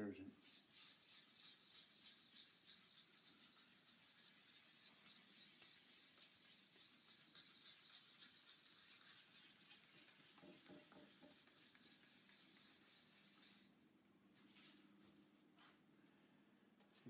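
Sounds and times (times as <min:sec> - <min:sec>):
sandpaper rubbing: 0:00.4 - 0:13.7.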